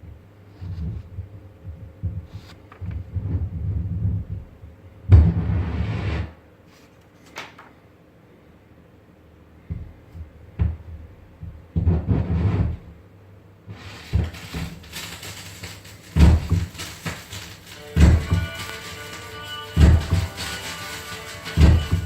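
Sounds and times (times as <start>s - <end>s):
steady hiss: 13.7s - 22.0s
low thumps and knocks: 16.1s - 18.6s.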